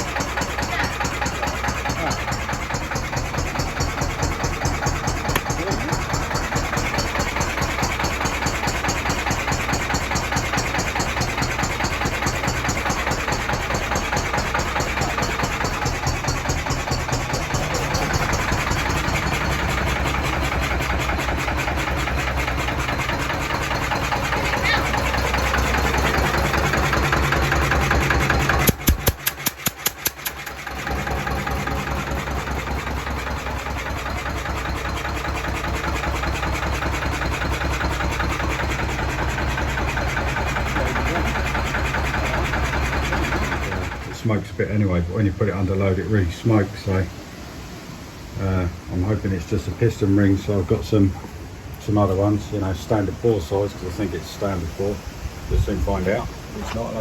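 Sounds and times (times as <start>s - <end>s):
diesel engine running rhythmically: 0.0s - 44.5s
sharp clicks: 5.3s - 5.6s, 28.4s - 30.8s.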